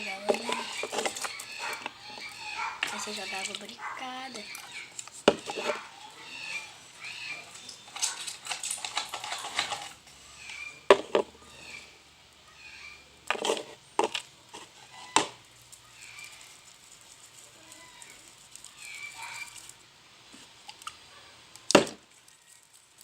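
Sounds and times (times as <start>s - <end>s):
scraping and stirring in container: 0.0s - 11.3s, 13.3s - 15.4s.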